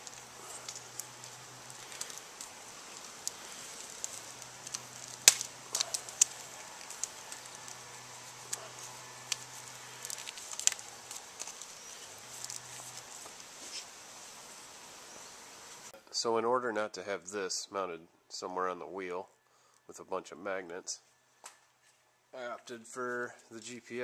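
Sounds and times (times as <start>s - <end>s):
small clicks of handling wires: 8.5s - 11.7s.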